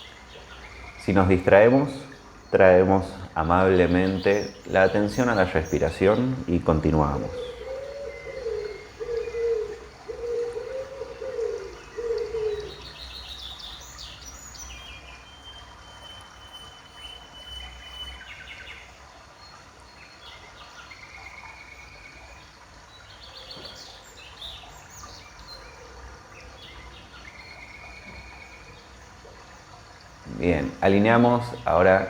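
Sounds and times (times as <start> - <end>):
birds chirping and trilling: 0.0 - 32.0
whistled bird notes: 3.7 - 18.9
low cooing call: 6.4 - 13.2.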